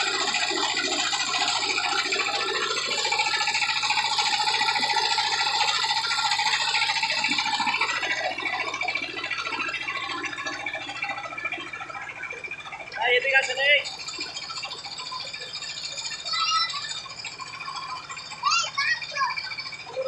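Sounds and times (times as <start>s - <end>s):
high-pitched buzzing rasp: 0.0s - 12.2s.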